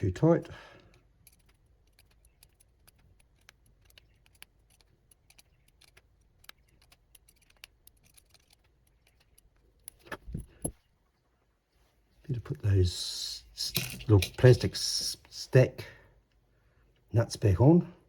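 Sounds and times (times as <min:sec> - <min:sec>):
small tools clicking: 0:00.8 - 0:10.8.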